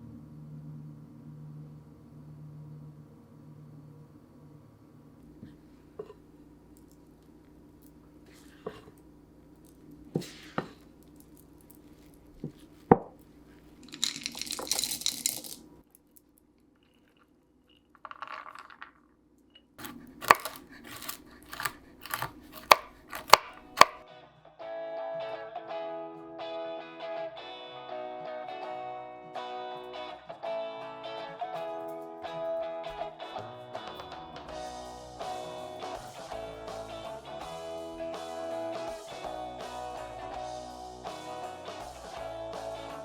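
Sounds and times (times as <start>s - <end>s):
guitar music: 23.8s - 43.0s.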